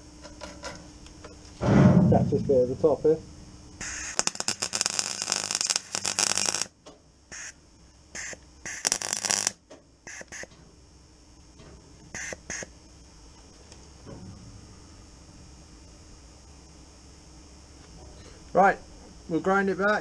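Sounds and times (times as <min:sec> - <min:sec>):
welder arc crackling: 0:03.8 - 0:07.6, 0:08.2 - 0:10.6.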